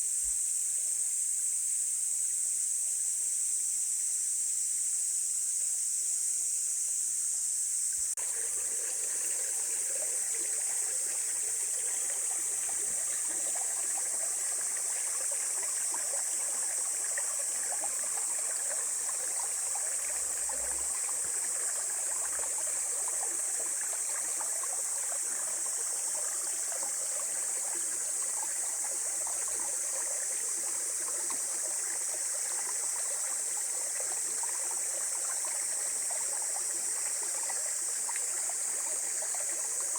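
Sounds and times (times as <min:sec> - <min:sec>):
insects droning: 0:00.0 - 0:39.9
stream babbling and trickling: 0:07.9 - 0:39.9.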